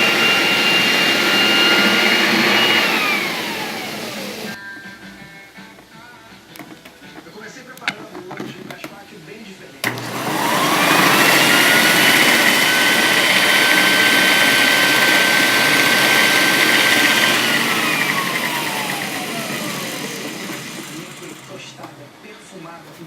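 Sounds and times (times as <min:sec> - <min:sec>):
vacuum cleaner motor whining: 0:00.0 - 0:04.6, 0:09.8 - 0:22.6.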